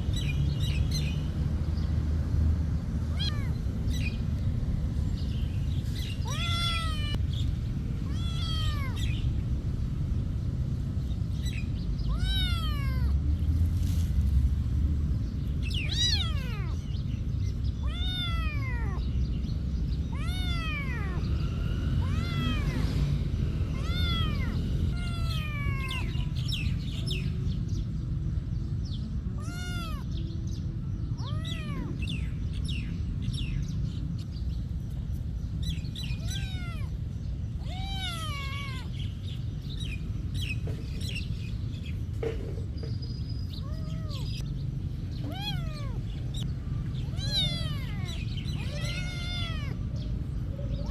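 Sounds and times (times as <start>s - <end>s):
steady low rumble: 0.0s - 50.9s
cats meowing: 3.1s - 4.2s, 5.6s - 9.5s, 11.4s - 13.2s, 15.5s - 27.4s, 29.2s - 34.3s, 35.6s - 42.4s, 43.4s - 50.9s.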